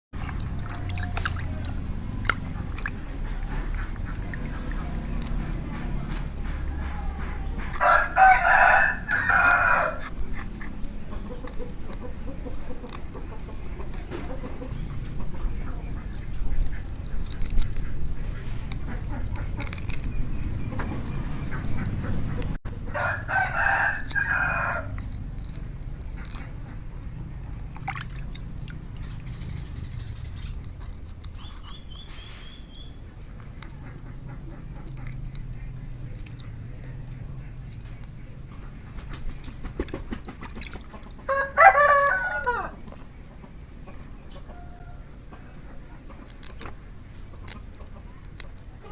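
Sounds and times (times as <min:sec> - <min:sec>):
rooster crowing: 0:07.8 - 0:10.0, 0:22.9 - 0:25.0, 0:41.3 - 0:42.8, 0:44.5 - 0:45.1.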